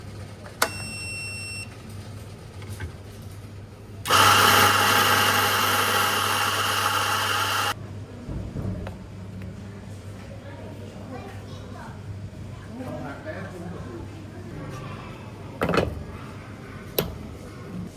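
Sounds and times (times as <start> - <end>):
coffee machine whirring: 4.1 - 7.8.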